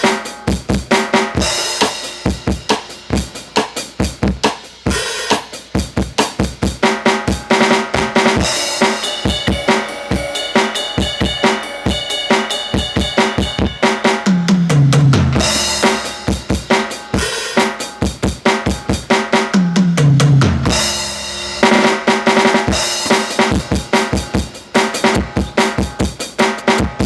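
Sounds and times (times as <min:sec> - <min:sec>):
electronic drum kit groove: 0:00.0 - 0:27.0
crash cymbal: 0:08.4 - 0:14.2
tom fills: 0:20.0 - 0:26.0.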